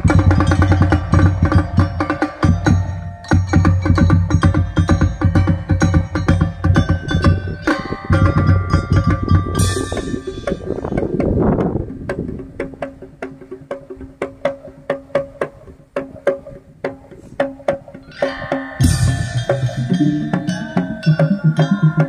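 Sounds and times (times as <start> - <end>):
bell-like melody: 0.0 - 11.0, 18.1 - 22.0
marching drum strokes: 0.0 - 22.0
rush of noise: 7.2 - 13.0.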